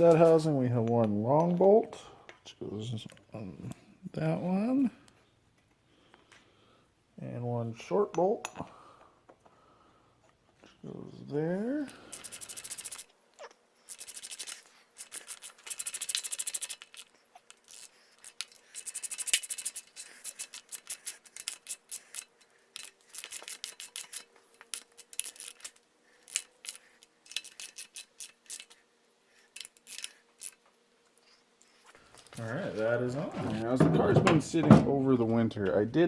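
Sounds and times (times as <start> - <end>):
ratchet wrench clicking: 12.1 - 13.1, 13.9 - 28.8, 29.6 - 30.6.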